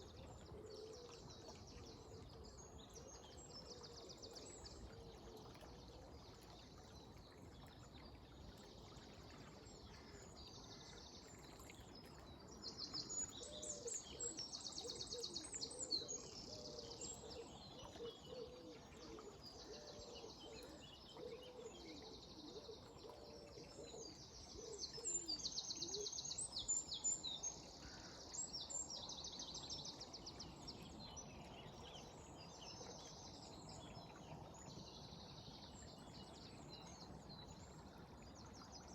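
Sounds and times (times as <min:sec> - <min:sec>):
flowing river water hiss: 0:03.4 - 0:38.9
songbirds trilling and chirping: 0:09.8 - 0:38.9.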